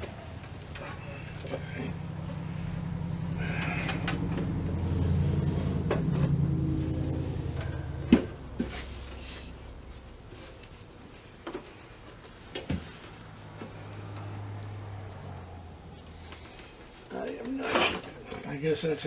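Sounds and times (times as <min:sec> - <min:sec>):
low steady hum: 0:00.0 - 0:12.5.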